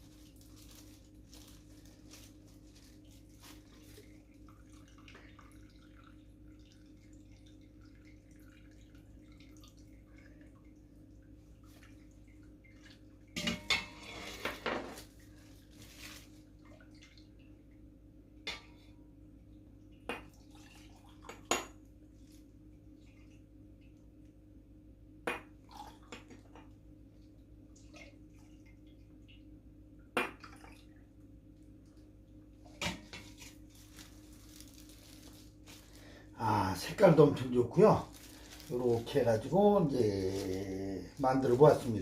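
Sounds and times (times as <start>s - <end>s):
low steady hum: 0.0s - 42.0s
liquid dripping: 1.7s - 13.5s, 25.4s - 42.0s.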